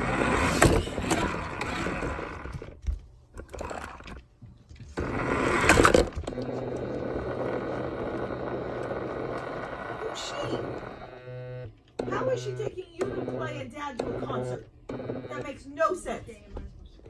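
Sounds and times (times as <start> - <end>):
phone rumbling and scraping: 0.0 - 2.8, 4.9 - 15.7
steady low hum: 4.9 - 17.0.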